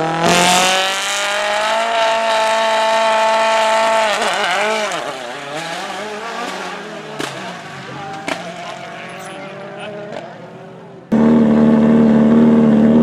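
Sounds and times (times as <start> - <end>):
rally car engine at full revs: 0.0 - 13.0
sharp crack: 6.4 - 8.9.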